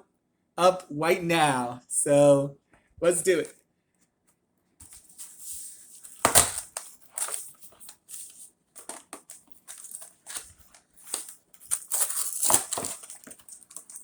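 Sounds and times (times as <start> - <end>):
packaging crunching and crinkling: 6.0 - 14.0.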